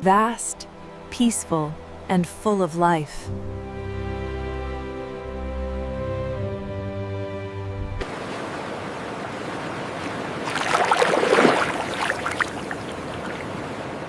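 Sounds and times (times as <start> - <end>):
background music: 0.0 - 8.1
water rushing and splashing: 8.0 - 14.0.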